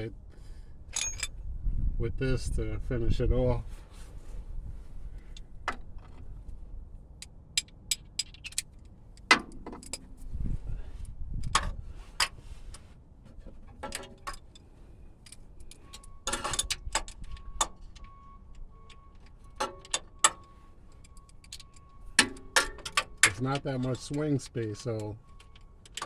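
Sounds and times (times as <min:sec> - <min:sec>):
short metal rattle: 0:00.9 - 0:01.4
hand tool clicking on bolt: 0:07.2 - 0:10.0.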